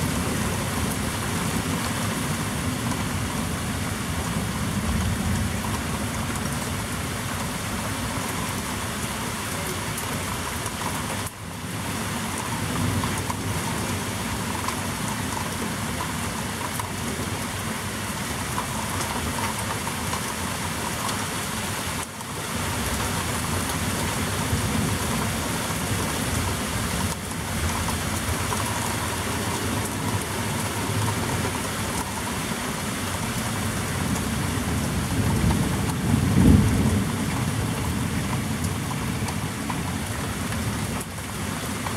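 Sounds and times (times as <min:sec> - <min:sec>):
heavy rain hiss: 0:00.0 - 0:41.9
low thunder rumble: 0:35.1 - 0:38.4.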